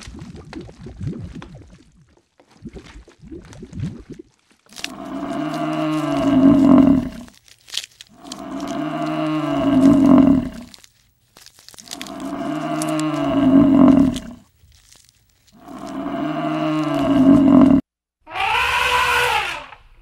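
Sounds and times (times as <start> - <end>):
faint rustles: 4.7 - 17.8
cow mooing: 4.9 - 7.3, 8.2 - 10.7, 12.0 - 14.4, 15.6 - 17.8.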